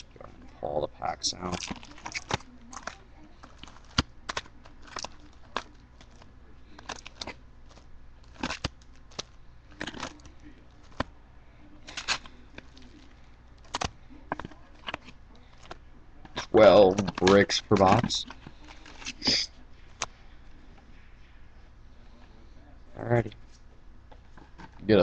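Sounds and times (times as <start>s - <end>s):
card pack wrappers rustling: 1.3s - 11.1s, 11.8s - 20.1s.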